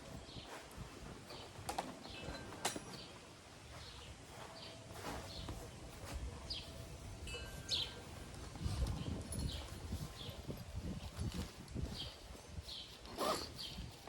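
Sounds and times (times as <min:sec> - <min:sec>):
small birds chirping: 0:00.0 - 0:14.0
wind on microphone: 0:06.1 - 0:14.0.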